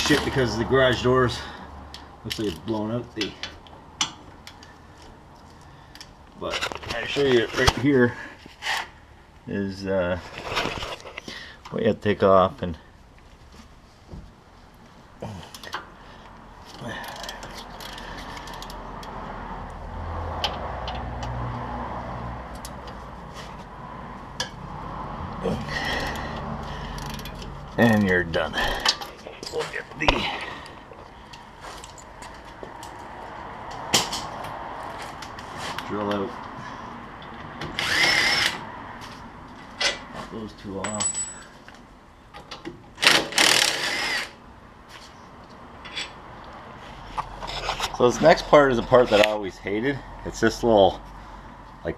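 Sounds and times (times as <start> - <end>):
motor vehicle running: 16.0 - 37.8
power drill running: 37.7 - 38.6, 43.0 - 44.4.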